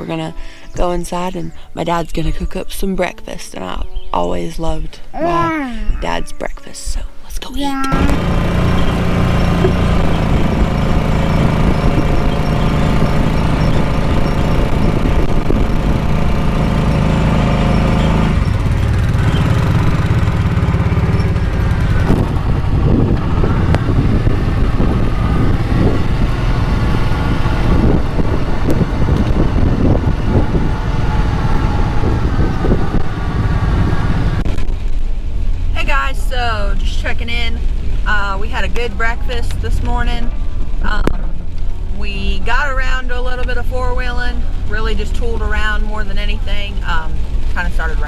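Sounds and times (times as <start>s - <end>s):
atv engine running: 7.9s - 48.0s.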